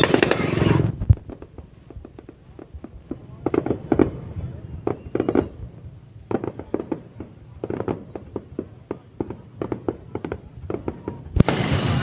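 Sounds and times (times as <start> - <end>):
fireworks bangs and pops: 0.0 - 12.0.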